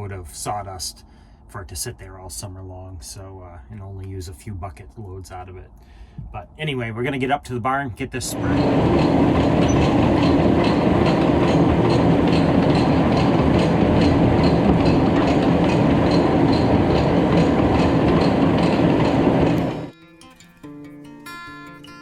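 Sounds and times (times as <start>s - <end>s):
regular clacking: 8.2s - 19.9s
tractor engine running: 8.2s - 19.9s.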